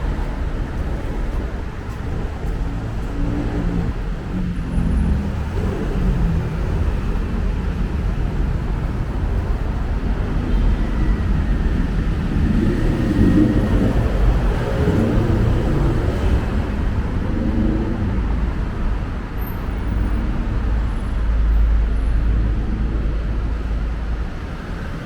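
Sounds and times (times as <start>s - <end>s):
city road traffic: 0.0s - 25.0s.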